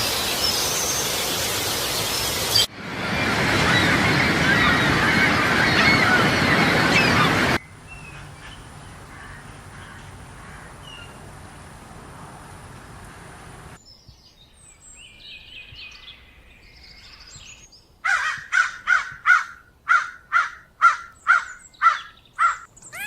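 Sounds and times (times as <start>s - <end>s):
outdoor background hiss: 0.0s - 4.2s, 7.6s - 23.0s
bird giving loud short calls: 19.4s - 23.0s
faint high bird chirps: 21.2s - 23.0s.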